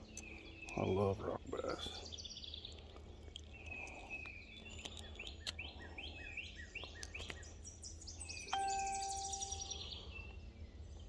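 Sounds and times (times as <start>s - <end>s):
songbird whistling: 8.2s - 10.4s
steady tone: 8.6s - 9.9s.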